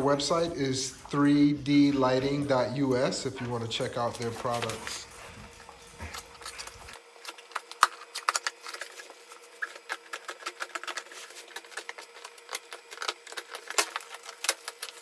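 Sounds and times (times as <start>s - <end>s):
cardboard and plastic rustling: 3.3s - 15.0s.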